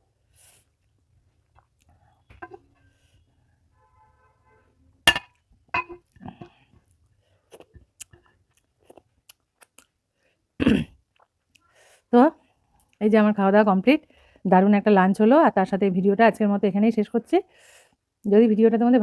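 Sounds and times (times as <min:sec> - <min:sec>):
quiet chewing: 0:00.4 - 0:02.6, 0:06.1 - 0:10.4, 0:11.0 - 0:11.8.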